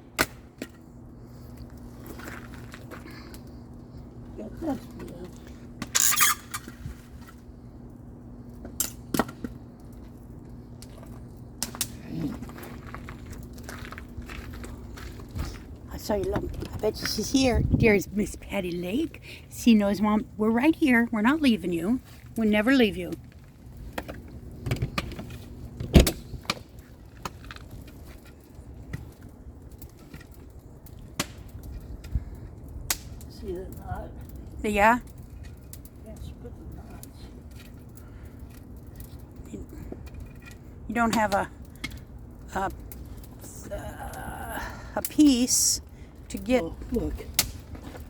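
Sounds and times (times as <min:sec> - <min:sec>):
hatchet chopping firewood: 0:00.1 - 0:00.8, 0:08.7 - 0:09.6, 0:31.0 - 0:31.5, 0:47.3 - 0:48.0
axe striking firewood: 0:00.2 - 0:00.8.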